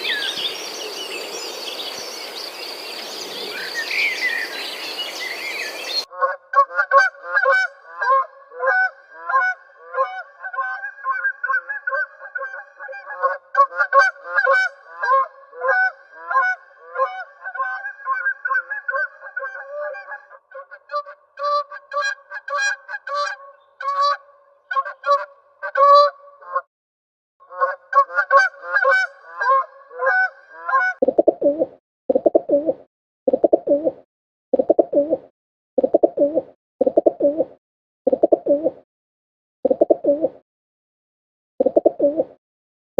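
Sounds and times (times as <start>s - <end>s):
geese honking: 6.1s - 26.6s, 27.5s - 31.0s.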